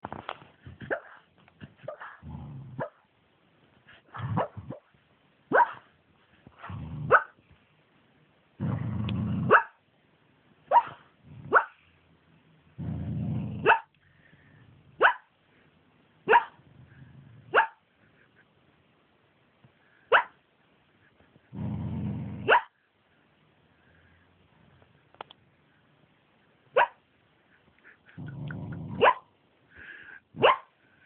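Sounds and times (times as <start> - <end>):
dog barking in its sleep: 5.5 - 5.9, 6.6 - 7.4, 10.7 - 11.8, 13.6 - 13.9, 16.3 - 17.8, 22.4 - 22.8, 28.9 - 29.3, 30.4 - 30.7
dog low rumbling: 28.1 - 29.0.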